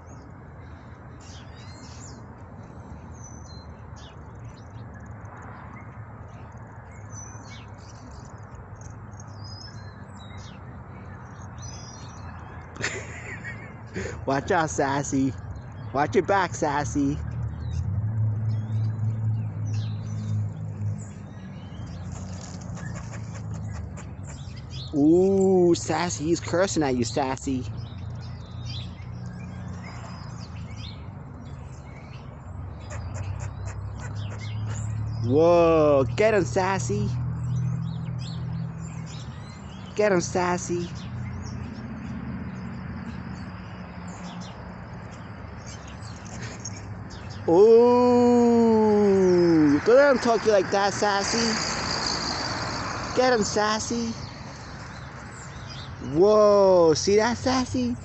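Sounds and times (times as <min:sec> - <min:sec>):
squirrel chirping: 0:21.4 - 0:29.4.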